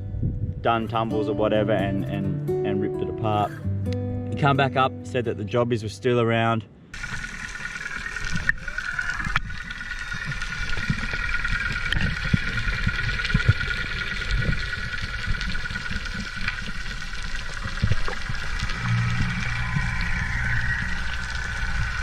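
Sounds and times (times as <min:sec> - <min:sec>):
low thumps and rumble: 0:00.0 - 0:00.8, 0:09.3 - 0:22.0
boat motor whining: 0:07.0 - 0:22.0.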